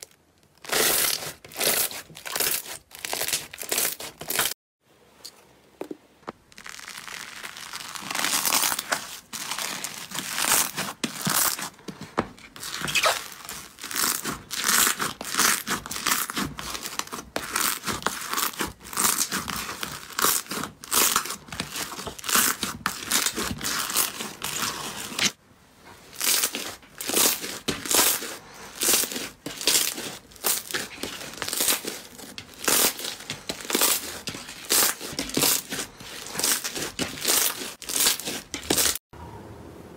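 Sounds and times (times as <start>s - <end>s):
slime crackling and popping: 6.4s - 11.7s.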